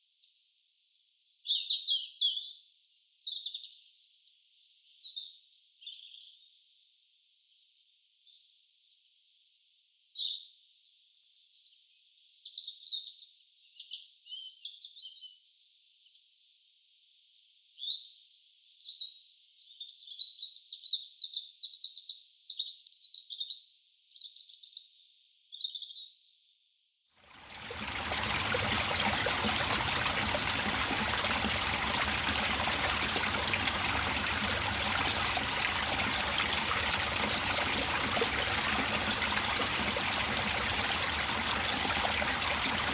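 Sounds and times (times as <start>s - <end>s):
stream flowing: 27.3s - 42.9s.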